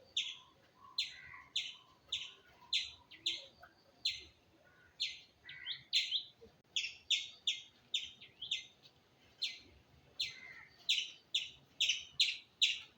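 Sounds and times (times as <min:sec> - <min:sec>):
squirrel chirping: 0:10.2 - 0:12.9.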